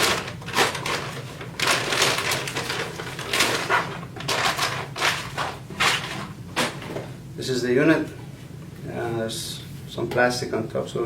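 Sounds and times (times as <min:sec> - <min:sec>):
packaging rustling and crinkling: 0:00.0 - 0:07.1.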